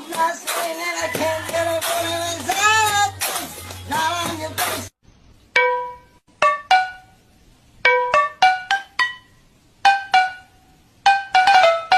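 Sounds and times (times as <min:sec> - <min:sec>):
person singing over music: 0:00.0 - 0:04.9
plucked single notes melody: 0:05.5 - 0:11.9.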